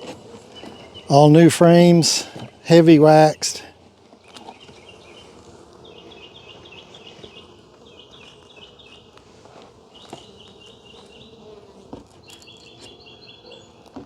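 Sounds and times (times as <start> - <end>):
honeybees buzzing: 0.0 - 14.0
bird chirping: 4.3 - 9.1, 12.2 - 13.8.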